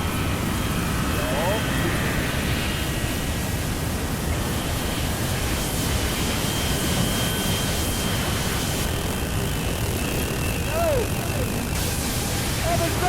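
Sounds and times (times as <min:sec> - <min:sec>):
rushing synthesized noise: 0:08.1 - 0:13.0.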